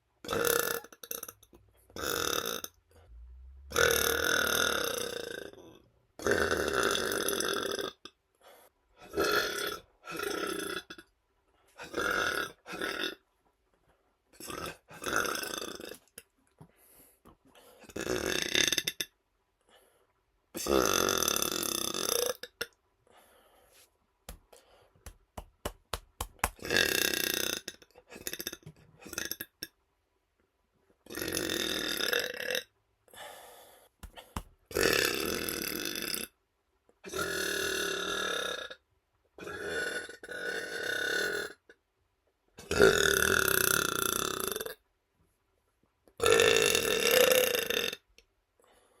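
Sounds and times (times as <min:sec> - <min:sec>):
man burping: 0:00.2 - 0:02.8, 0:03.7 - 0:08.0, 0:17.9 - 0:19.1, 0:20.6 - 0:22.7, 0:26.6 - 0:29.6, 0:31.1 - 0:32.7, 0:34.7 - 0:36.3, 0:42.6 - 0:44.8, 0:46.2 - 0:48.1.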